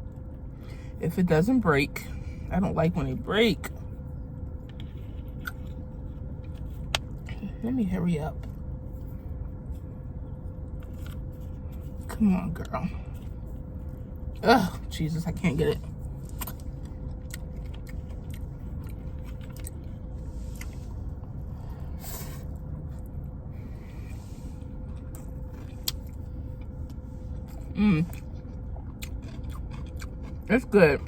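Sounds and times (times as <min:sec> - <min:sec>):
car interior hum: 0:00.0 - 0:31.0
person chewing: 0:03.7 - 0:07.4, 0:08.4 - 0:14.9, 0:15.7 - 0:23.2, 0:23.8 - 0:31.0
person murmuring: 0:27.8 - 0:28.1.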